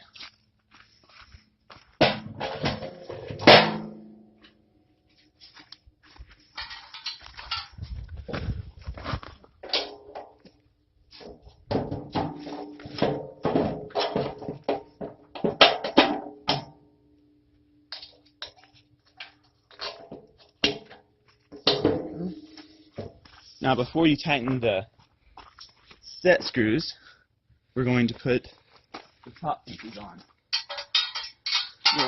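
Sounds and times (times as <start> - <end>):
steel parts clanking: 6.5 - 7.8, 30.5 - 32.0.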